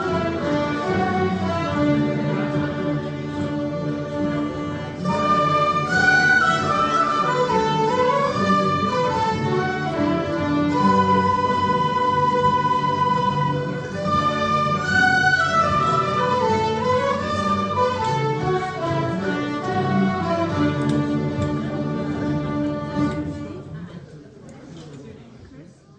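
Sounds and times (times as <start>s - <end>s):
folk group playing a tune: 0.0s - 24.0s.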